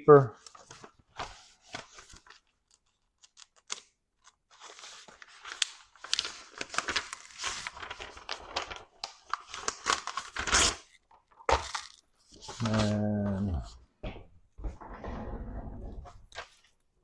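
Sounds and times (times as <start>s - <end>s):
paper rustling and tearing: 0.4s - 13.1s.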